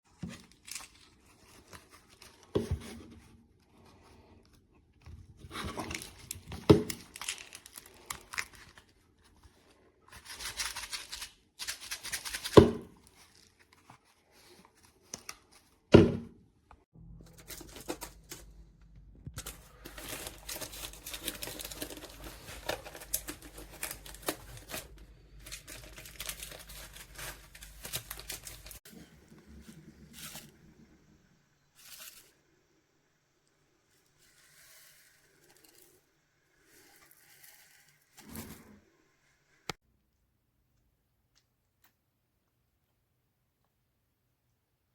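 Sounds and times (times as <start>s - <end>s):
plastic rustling: 5.4s - 15.8s, 17.1s - 18.7s, 19.4s - 28.9s
plastic packaging tearing and crinkling: 5.5s - 9.0s, 17.2s - 18.6s, 19.4s - 28.8s.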